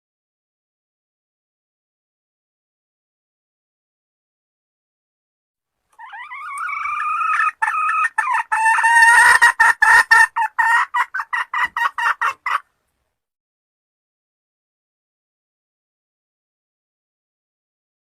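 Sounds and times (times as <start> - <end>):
hen cackling: 6.0 - 12.7.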